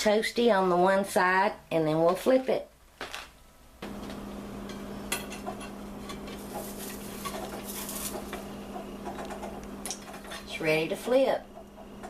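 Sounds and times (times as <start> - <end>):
bread sizzling in a skillet: 5.9 - 8.6.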